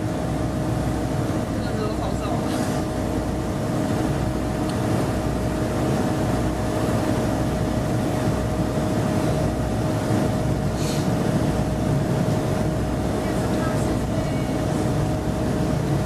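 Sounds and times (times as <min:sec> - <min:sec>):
train diesel engine rumble: 0:00.0 - 0:16.0.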